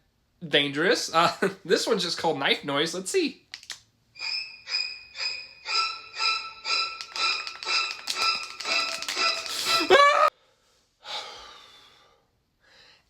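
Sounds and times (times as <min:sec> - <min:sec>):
rising cry: 0:09.6 - 0:10.3.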